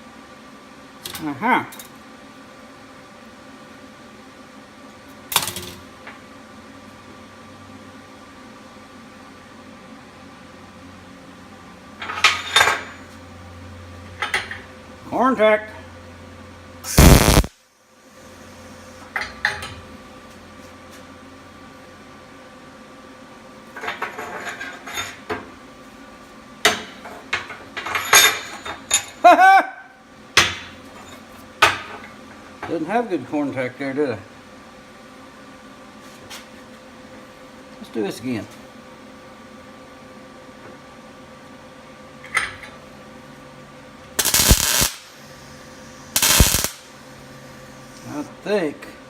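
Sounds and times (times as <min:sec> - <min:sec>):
welding arc crackling: 0:16.9 - 0:17.6, 0:44.2 - 0:45.3, 0:46.0 - 0:47.0.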